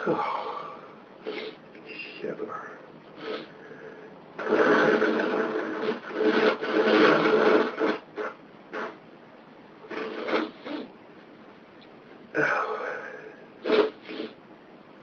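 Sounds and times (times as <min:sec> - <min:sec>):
rasping nasal breath: 0:00.0 - 0:02.2, 0:03.2 - 0:09.0, 0:09.9 - 0:10.9, 0:12.4 - 0:14.4
short sharp sniffs: 0:01.2 - 0:01.6, 0:03.2 - 0:03.8, 0:13.6 - 0:14.4.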